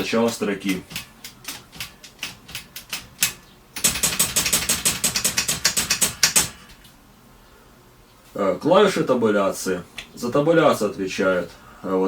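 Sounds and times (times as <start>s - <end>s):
typewriter backspace key clicking: 0.3s - 6.6s.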